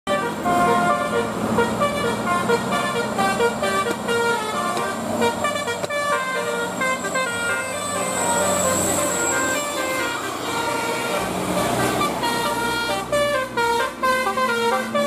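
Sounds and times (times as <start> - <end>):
bus air horn melody: 0.1 - 15.0.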